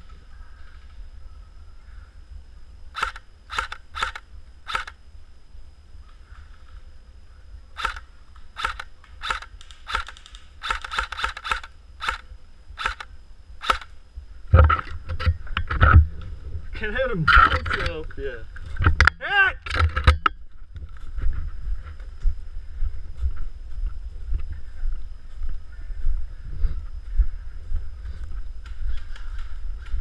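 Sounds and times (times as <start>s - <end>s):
airsoft gun shots: 8.6s - 12.2s, 12.8s - 13.9s
low rumbling and thumps: 14.2s - 19.2s, 19.8s - 30.0s.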